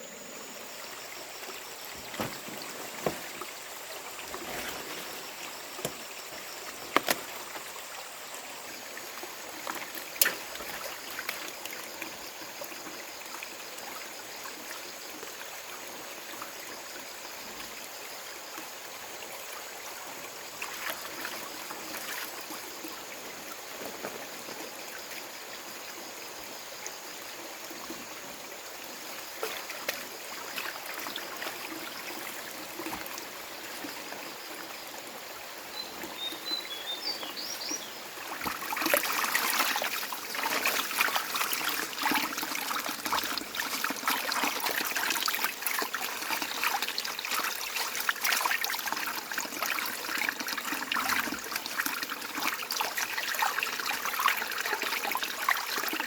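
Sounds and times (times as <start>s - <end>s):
water trickling: 0.1s - 56.0s
water splashing and crackling: 1.8s - 12.3s, 29.2s - 34.6s, 37.4s - 56.0s.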